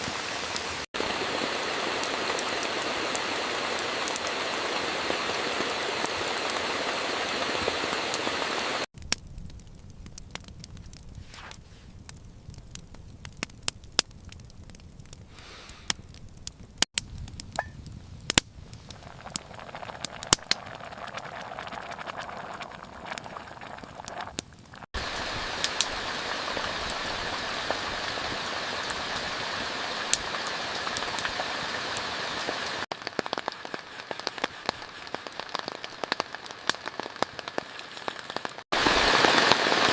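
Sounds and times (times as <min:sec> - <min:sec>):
heavy rain downpour hiss: 0:00.0 - 0:08.9, 0:24.9 - 0:39.9.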